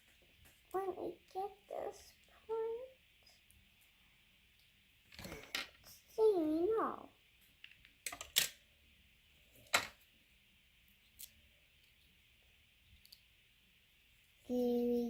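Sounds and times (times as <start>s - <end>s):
faint steady hiss: 0.0s - 15.0s
plastic pieces clicking and knocking: 7.6s - 8.6s.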